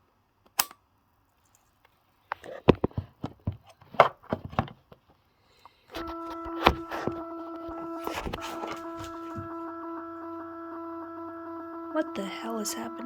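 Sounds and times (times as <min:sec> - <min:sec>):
steady electronic buzz: 0:05.9 - 0:13.0.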